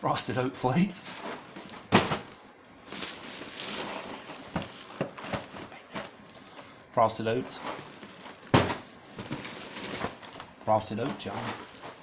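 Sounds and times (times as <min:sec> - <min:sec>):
cardboard boxes rustling: 0:01.0 - 0:12.0
cardboard box knock: 0:08.5 - 0:09.4.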